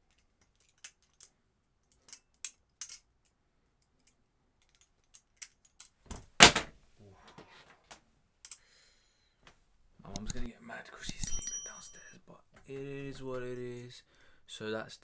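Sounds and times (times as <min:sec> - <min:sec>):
loud knock: 0:06.1 - 0:06.7.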